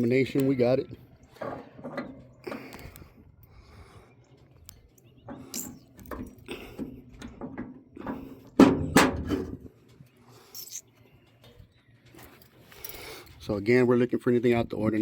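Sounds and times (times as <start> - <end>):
metal door clanking and rattling: 1.3 - 2.7, 5.2 - 9.8.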